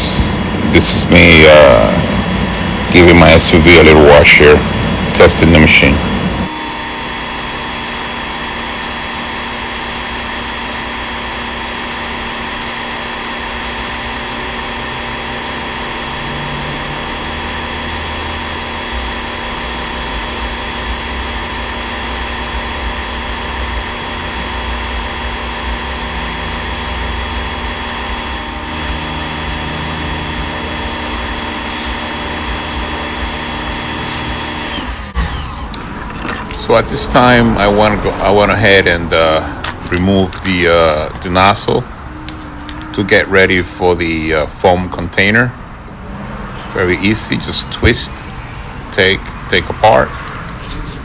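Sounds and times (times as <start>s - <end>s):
pressure washer motor whine: 0.0s - 51.0s
water jet spraying: 34.5s - 51.0s.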